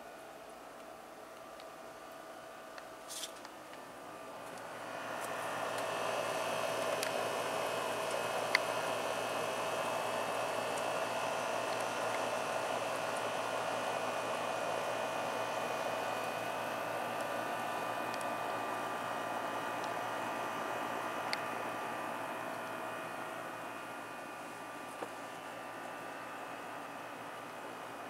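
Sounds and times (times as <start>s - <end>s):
machine hum with whine: 0.0s - 28.0s.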